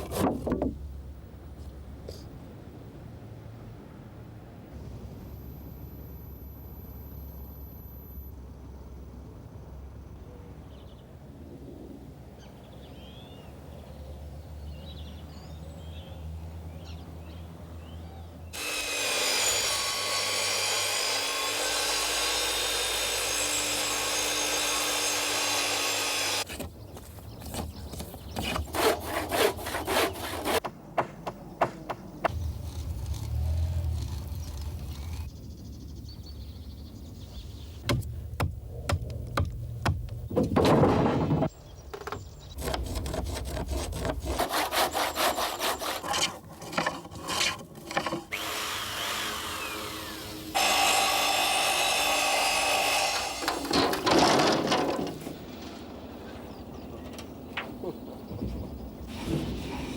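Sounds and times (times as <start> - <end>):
saw cutting timber: 18.5 - 26.5, 28.4 - 30.6, 42.6 - 54.7.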